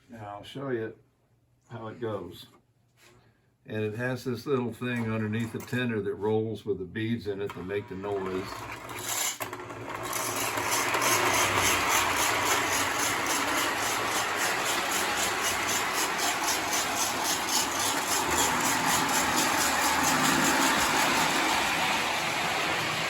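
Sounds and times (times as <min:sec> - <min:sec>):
toy train motor and wheels rumbling: 0:07.9 - 0:23.0
fast even rattle: 0:10.6 - 0:21.9.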